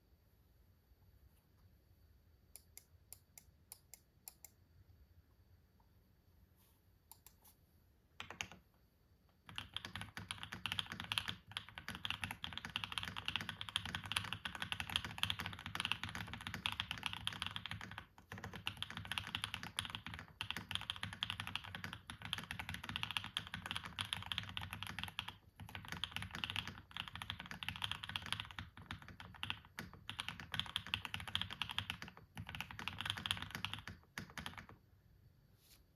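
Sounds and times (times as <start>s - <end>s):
mechanical keyboard typing: 8.2s - 8.6s, 9.4s - 34.8s.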